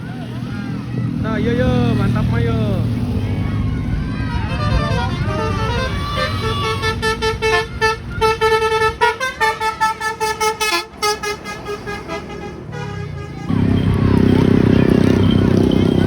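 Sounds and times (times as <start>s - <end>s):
bus musical air horn: 4.3s - 13.8s.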